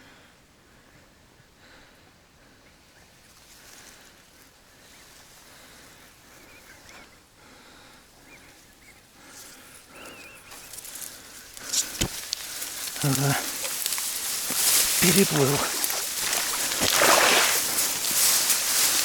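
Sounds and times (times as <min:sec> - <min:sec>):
soft rustling: 0:10.5 - 0:19.0.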